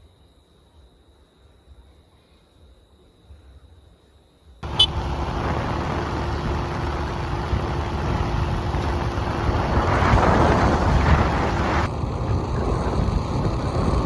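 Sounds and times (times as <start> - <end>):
loud steady rushing noise: 4.6 - 14.0.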